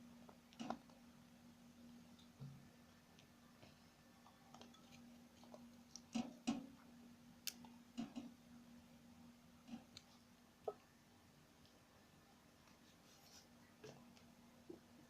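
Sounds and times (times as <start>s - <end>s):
low steady hum: 0.0s - 15.0s
faint clicks and knocks: 0.2s - 1.0s, 2.1s - 8.4s.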